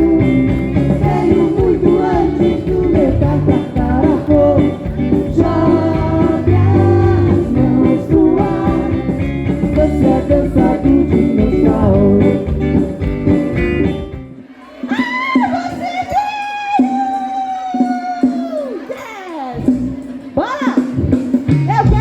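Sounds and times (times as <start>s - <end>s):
person singing: 0.0s - 13.0s
live band music: 0.0s - 22.0s.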